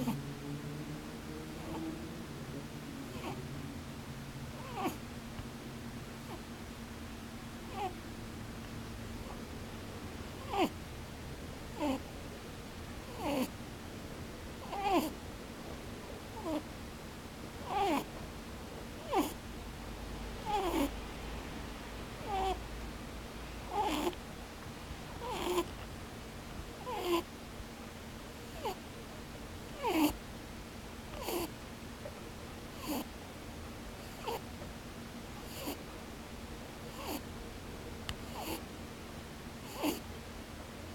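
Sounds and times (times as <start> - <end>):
rabbit snoring: 0.0 - 3.8, 4.5 - 5.1, 6.2 - 6.5, 7.7 - 8.0, 9.2 - 9.6, 10.3 - 10.8, 11.7 - 12.2, 13.0 - 13.6, 14.6 - 15.2, 16.3 - 16.7, 17.6 - 18.2, 18.9 - 19.4, 20.3 - 22.7, 23.6 - 24.3, 25.1 - 25.8, 26.8 - 27.3, 28.3 - 28.8, 29.7 - 30.2, 31.1 - 31.6, 32.7 - 33.1, 34.0 - 34.5, 35.4 - 35.9, 36.8 - 37.3, 38.2 - 38.7, 39.6 - 40.1.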